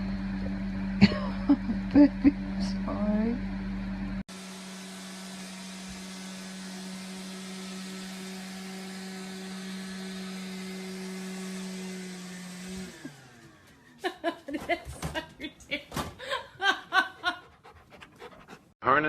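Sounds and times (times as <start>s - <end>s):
small appliance motor whirring: 4.3s - 14.0s.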